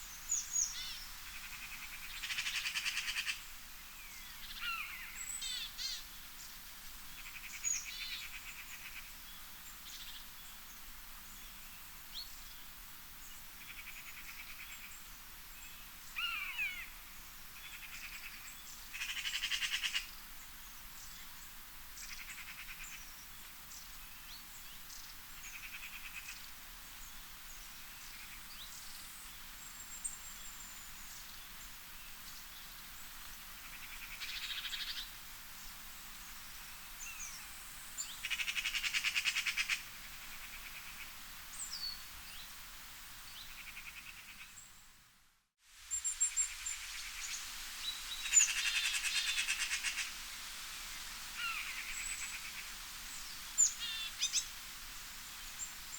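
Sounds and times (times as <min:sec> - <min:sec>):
faint steady hiss: 0:00.0 - 0:55.9
rapid pulsed bird trills: 0:45.9 - 0:50.1.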